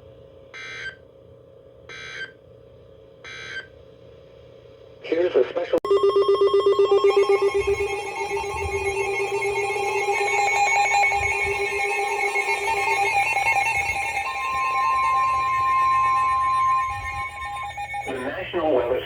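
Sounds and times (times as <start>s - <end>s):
steady single tone: 5.9s - 11.6s
pulsing trilling alert tone: 5.9s - 18.6s.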